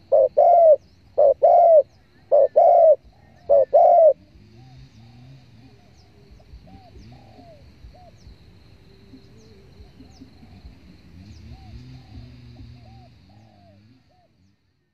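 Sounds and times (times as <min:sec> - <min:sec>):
doves cooing: 0:00.0 - 0:14.4.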